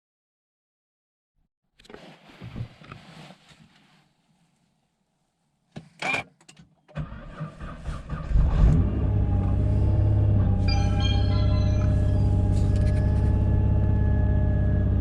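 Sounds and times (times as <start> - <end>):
car engine idling: 9.2 - 14.9.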